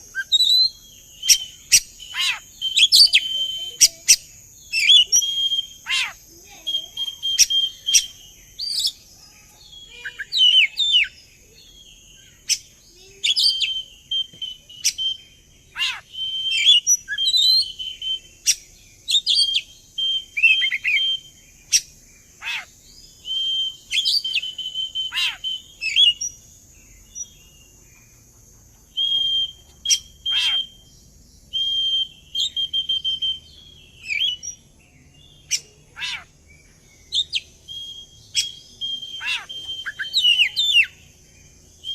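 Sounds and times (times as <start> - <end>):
magpie-robin singing: 0.0 - 41.9.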